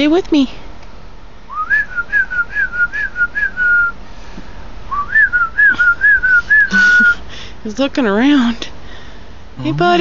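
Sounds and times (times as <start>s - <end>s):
person whistling: 1.5s - 4.0s, 4.9s - 7.2s.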